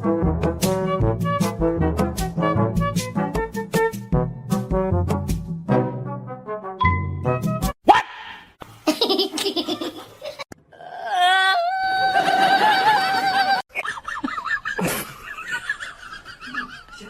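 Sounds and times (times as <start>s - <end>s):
laughter in bursts: 8.8s - 10.5s, 12.1s - 17.0s.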